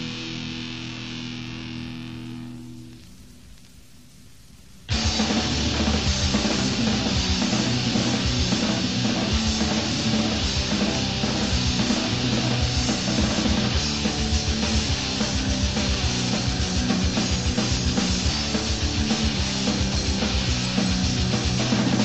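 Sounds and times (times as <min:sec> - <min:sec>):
distorted guitars and bass: 0:00.0 - 0:04.1, 0:04.8 - 0:22.0
fast hard-hit drums: 0:04.9 - 0:22.0.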